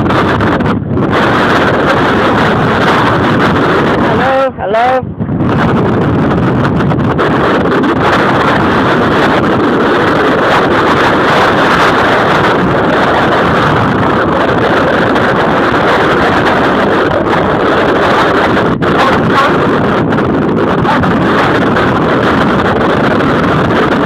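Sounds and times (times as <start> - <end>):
wind blowing across microphone: 0.0 - 24.0.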